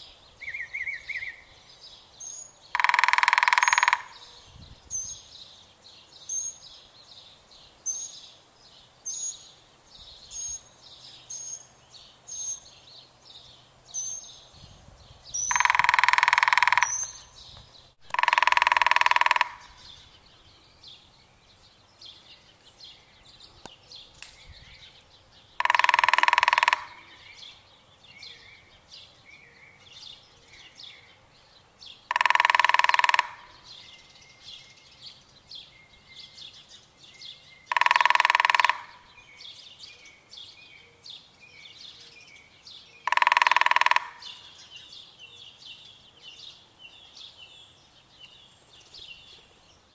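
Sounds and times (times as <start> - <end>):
small birds chirping: 0.0 - 49.9
woodpecker drumming: 2.7 - 4.4, 15.4 - 17.4, 18.0 - 20.0, 25.5 - 27.3, 32.0 - 33.8, 37.6 - 39.2, 43.0 - 44.5.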